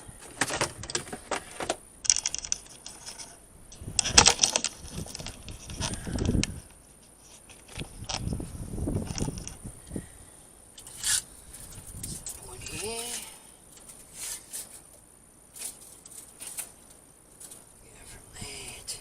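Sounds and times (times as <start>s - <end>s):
soft rustling: 10.8s - 19.0s.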